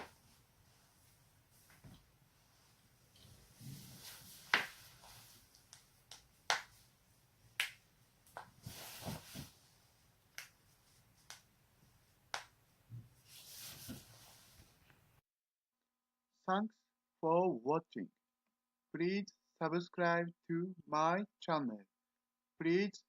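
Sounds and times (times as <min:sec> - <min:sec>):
soft rustling: 0:00.0 - 0:07.3, 0:08.2 - 0:15.2.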